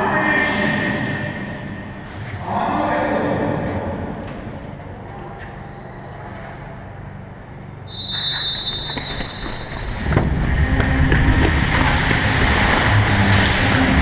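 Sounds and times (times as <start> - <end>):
loud continuous rumbling: 0.0 - 14.0
high whistle tone: 7.8 - 10.0.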